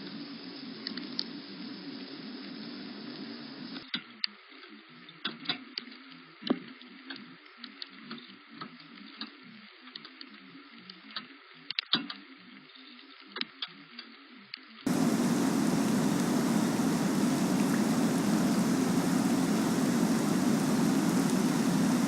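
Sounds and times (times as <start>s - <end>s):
faint steady hiss: 0.0s - 3.8s, 14.9s - 22.0s
raindrops ticking on surface: 14.9s - 22.0s.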